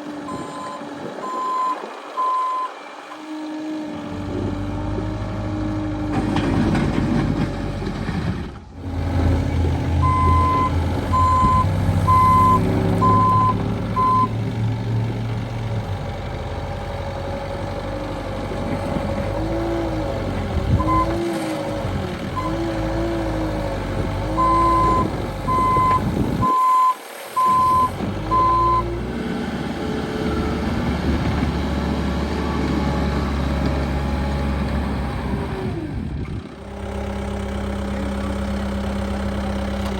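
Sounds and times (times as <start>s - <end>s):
backhoe loader engine working: 0.0s - 39.9s
reversing alarm beeping: 0.3s - 2.8s, 10.0s - 14.4s, 24.4s - 28.9s.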